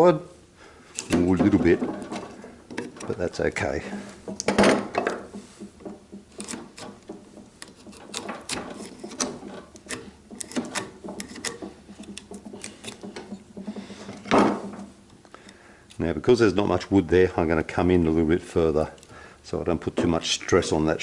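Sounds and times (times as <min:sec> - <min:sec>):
wooden clicks and scrapes: 0:00.9 - 0:15.6.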